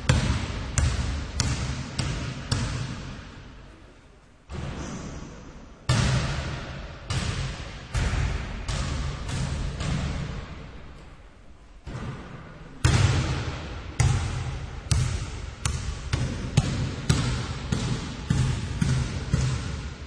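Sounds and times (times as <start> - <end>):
basketball bouncing on hard floor: 0.1 - 3.0, 14.0 - 19.9.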